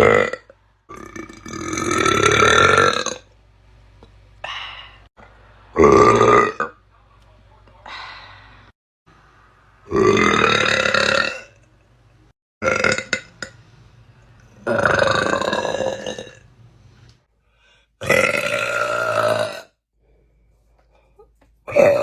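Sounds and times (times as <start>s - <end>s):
person burping loudly: 0.0s - 3.3s, 5.7s - 6.8s, 9.9s - 11.6s, 12.6s - 13.6s, 14.6s - 16.4s, 18.0s - 19.8s, 21.7s - 22.0s.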